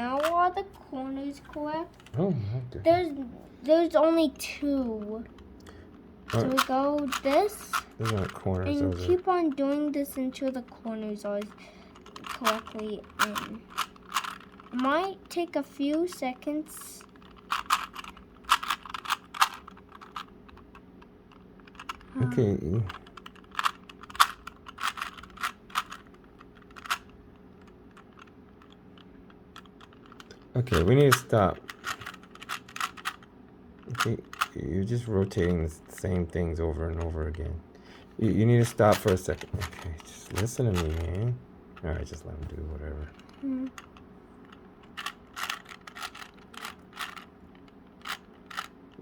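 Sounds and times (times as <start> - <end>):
puzzle cube clicking as turned: 6.3 - 8.4, 11.4 - 15.0, 17.0 - 22.1, 22.8 - 28.8, 29.6 - 34.5, 44.8 - 49.0.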